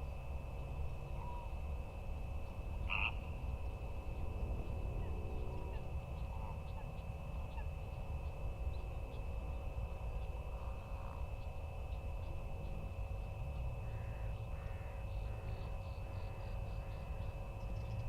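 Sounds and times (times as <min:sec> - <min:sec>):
animal call: 0:02.9 - 0:03.2.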